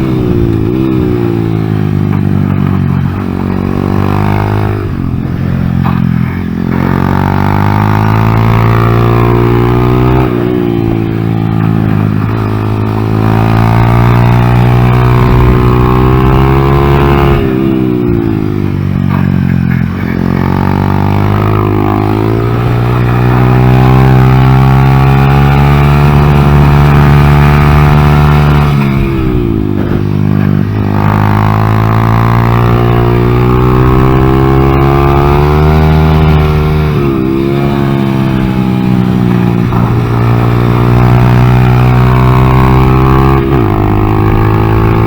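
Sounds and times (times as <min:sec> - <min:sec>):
small motorcycle engine revving: 0:00.0 - 0:45.0.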